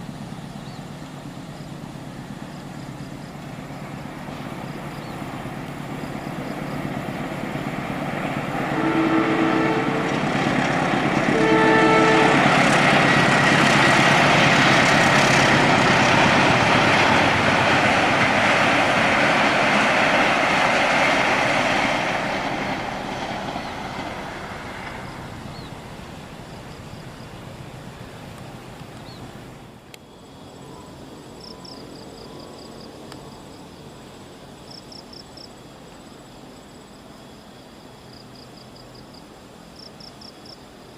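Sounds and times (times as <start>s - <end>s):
train wheels rushing on rail: 0.0s - 37.2s
train horn: 8.6s - 13.2s.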